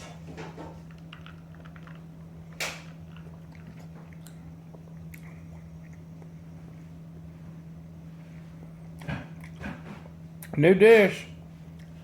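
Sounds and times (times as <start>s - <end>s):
steady low hum: 0.0s - 12.0s
person chewing food: 2.9s - 7.3s, 8.8s - 9.8s.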